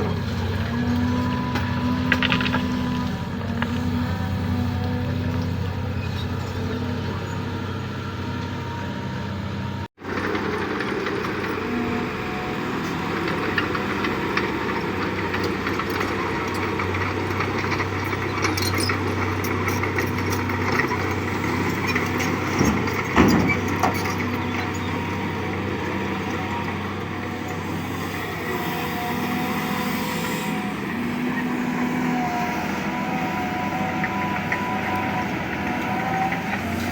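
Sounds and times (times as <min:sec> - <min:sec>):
diesel engine humming: 0:00.0 - 0:36.9
digging knocks and clicks: 0:01.6 - 0:04.0.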